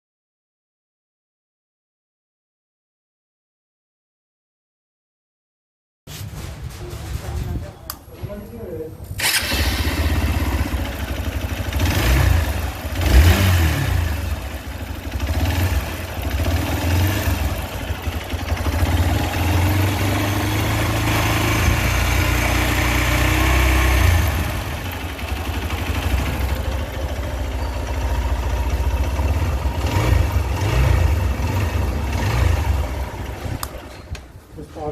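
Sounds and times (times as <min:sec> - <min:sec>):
motorcycle engine revving and idling: 0:09.1 - 0:34.2
engine tappet noise: 0:09.1 - 0:34.9.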